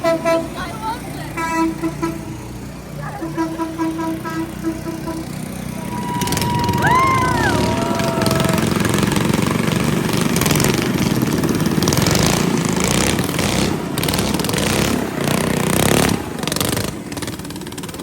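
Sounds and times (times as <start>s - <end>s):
vehicle engines rumbling: 0.0s - 18.0s.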